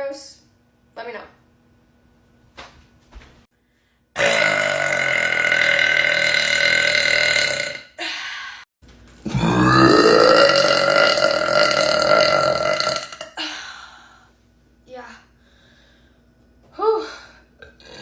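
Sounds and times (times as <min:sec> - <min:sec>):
woman burping loudly: 0:04.2 - 0:08.1, 0:09.2 - 0:13.5.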